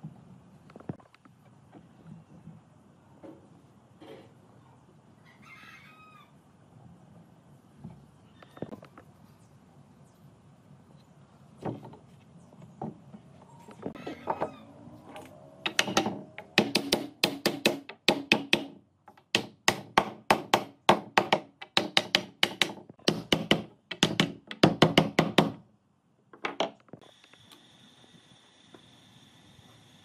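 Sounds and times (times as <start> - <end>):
hammering on wood: 15.6 - 25.6.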